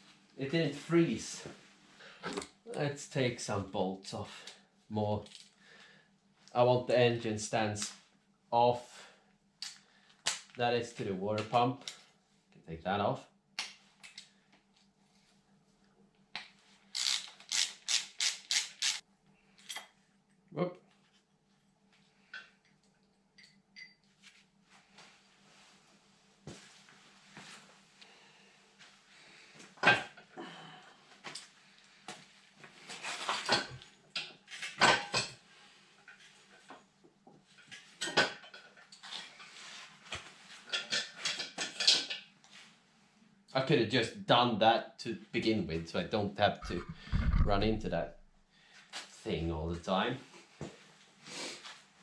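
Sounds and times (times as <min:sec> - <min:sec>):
ratchet wrench ratcheting: 0:17.0 - 0:19.0.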